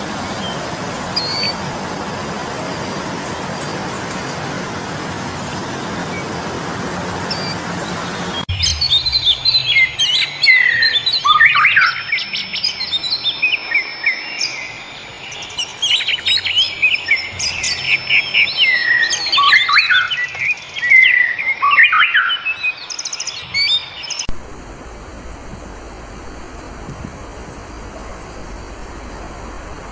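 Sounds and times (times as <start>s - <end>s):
steady rushing noise: 0.0s - 11.2s, 24.3s - 29.9s
birds chirping and singing: 0.0s - 24.3s.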